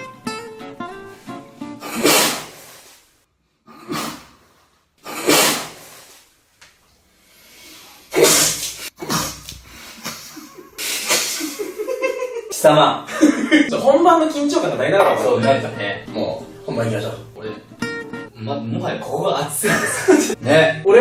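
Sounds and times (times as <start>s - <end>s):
man sneezing: 1.8s - 2.7s, 3.7s - 4.4s, 5.0s - 6.0s, 8.1s - 11.6s
sharp noisy breaths: 1.8s - 3.1s, 3.7s - 6.2s, 7.2s - 11.6s.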